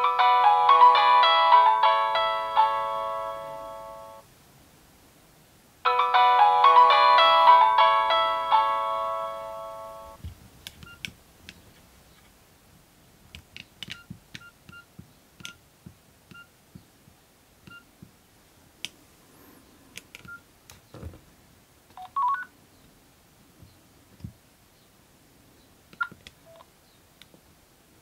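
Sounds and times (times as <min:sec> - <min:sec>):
keypad beeps: 0:10.8 - 0:11.0, 0:17.7 - 0:17.9, 0:20.2 - 0:20.4, 0:22.0 - 0:22.5.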